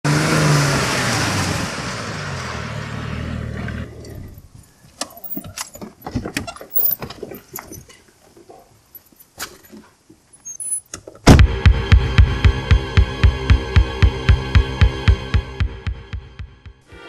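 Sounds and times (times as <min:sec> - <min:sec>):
vehicle engine passing: 0:00.1 - 0:04.2.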